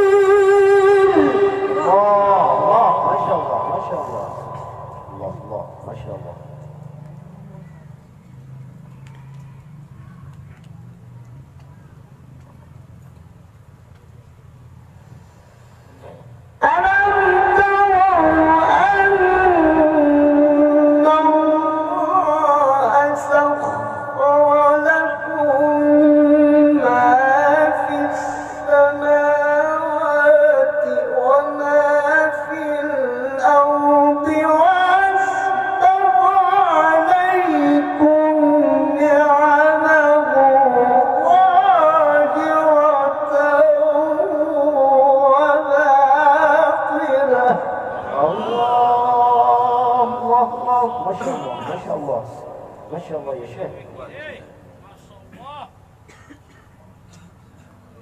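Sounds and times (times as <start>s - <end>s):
man reciting in melismatic chant: 0.0s - 7.6s, 16.1s - 55.8s.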